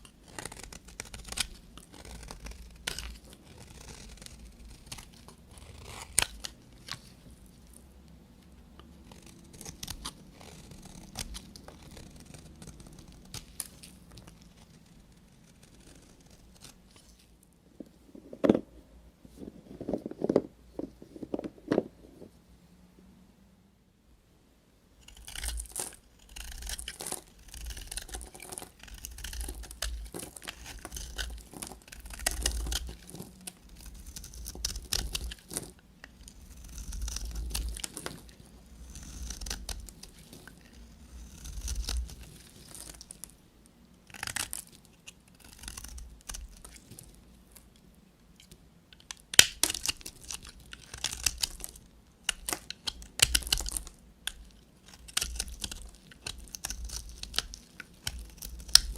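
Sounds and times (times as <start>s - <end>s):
knife cutting through soap: 0.2s - 6.6s, 25.1s - 42.9s, 49.1s - 58.9s
crisp crackling snaps: 25.0s - 43.4s, 44.0s - 58.9s.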